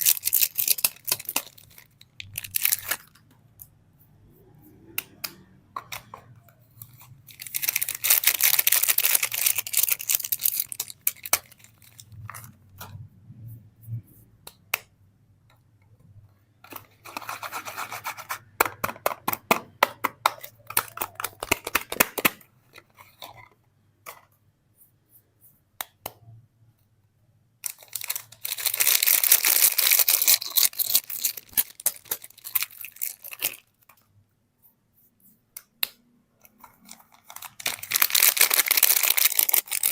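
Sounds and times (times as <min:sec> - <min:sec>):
packaging tearing and rustling: 0:00.0 - 0:03.2, 0:07.3 - 0:12.1, 0:27.7 - 0:33.8, 0:36.8 - 0:39.9.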